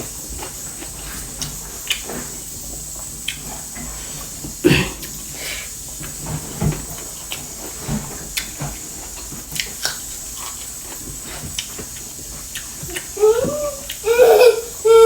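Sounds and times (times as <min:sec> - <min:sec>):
person chewing food: 0:09.5 - 0:14.1.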